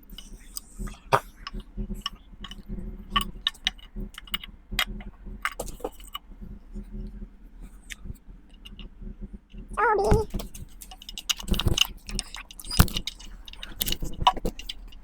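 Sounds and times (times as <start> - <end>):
low steady hum: 0.0 - 15.0
small hard objects clicking: 10.2 - 15.0.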